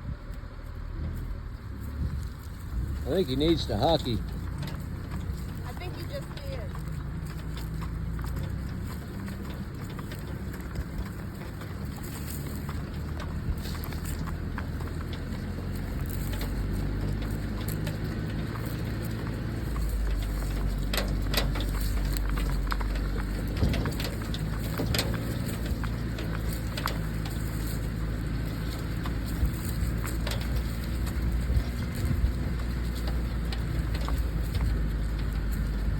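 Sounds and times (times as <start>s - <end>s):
wind buffeting microphone: 1.4s - 7.2s, 13.3s - 35.9s
sharp clicks and crackles: 1.8s - 35.9s.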